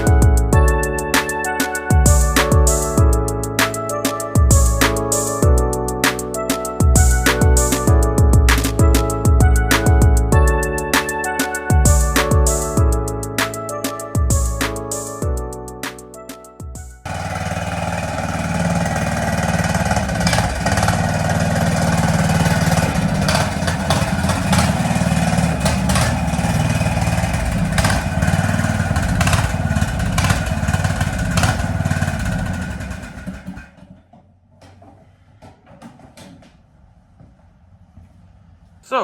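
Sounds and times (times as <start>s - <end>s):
lawn mower engine running: 17.1s - 33.8s.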